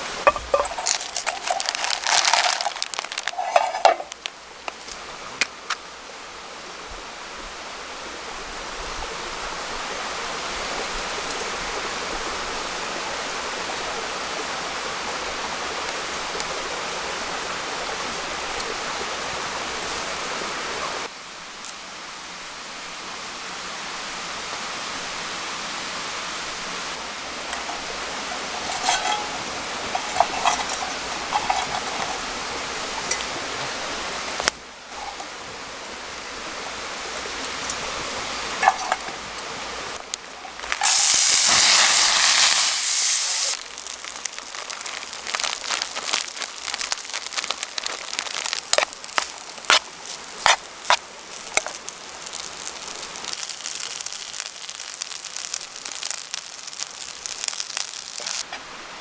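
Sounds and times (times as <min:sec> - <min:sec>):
handling clattering and rustling: 0:00.0 - 0:05.0, 0:27.2 - 0:35.4, 0:37.4 - 0:52.5
stream rushing: 0:00.0 - 0:21.0, 0:24.8 - 0:54.3.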